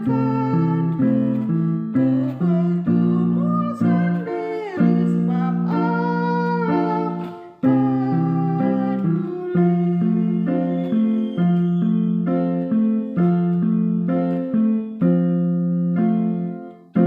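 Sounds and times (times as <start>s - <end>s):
electronic keyboard chords: 0.0s - 17.0s.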